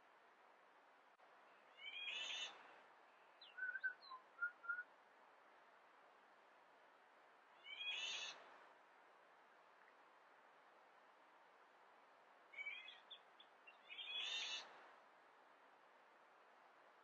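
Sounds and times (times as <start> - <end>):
faint steady hiss: 0.0 - 17.0
whistled bird notes: 3.4 - 4.9.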